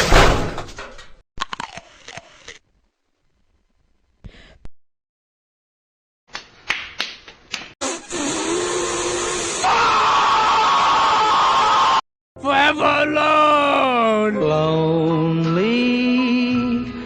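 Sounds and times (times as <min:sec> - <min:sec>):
slapping and smacking: 0:06.3 - 0:07.7.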